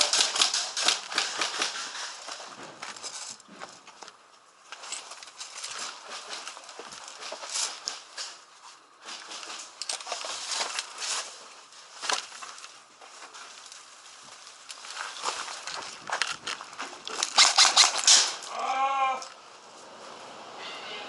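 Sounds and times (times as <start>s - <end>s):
footsteps through dry undergrowth: 4.7s - 17.9s.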